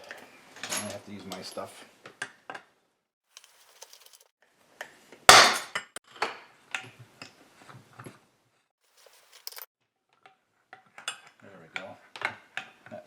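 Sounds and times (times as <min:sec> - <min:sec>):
metallic clinks: 0:09.0 - 0:09.7.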